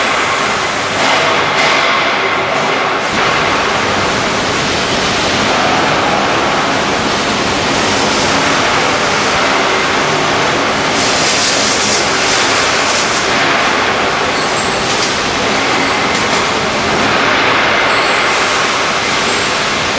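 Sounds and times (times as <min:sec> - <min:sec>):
industrial machinery running: 0:00.0 - 0:19.9.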